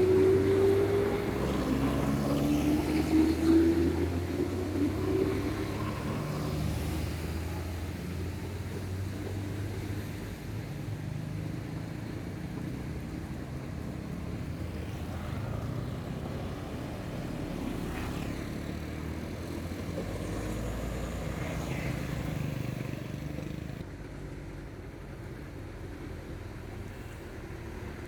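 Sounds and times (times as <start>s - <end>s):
large vehicle engine rumbling: 0.0s - 28.0s.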